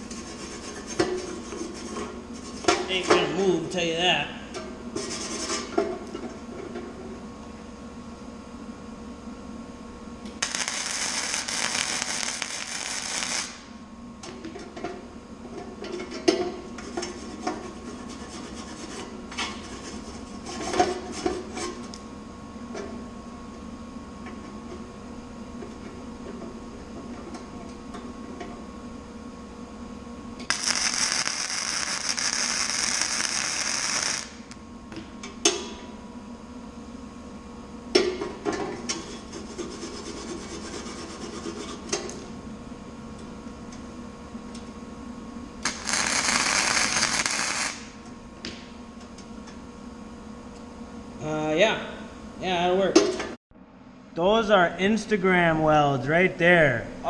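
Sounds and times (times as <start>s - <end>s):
welder arc crackling: 10.2s - 13.8s, 30.4s - 34.6s, 45.6s - 48.0s.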